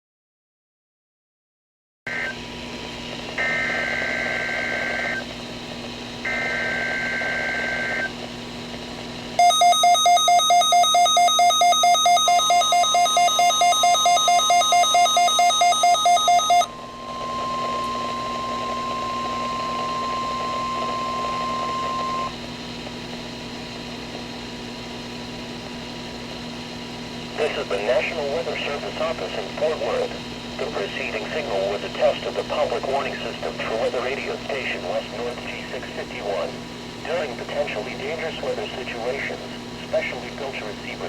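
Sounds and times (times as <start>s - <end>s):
steady warning alarm tone: 3.4s - 5.3s, 6.2s - 8.1s, 9.4s - 22.4s
rapid alarm beeps: 9.4s - 22.3s.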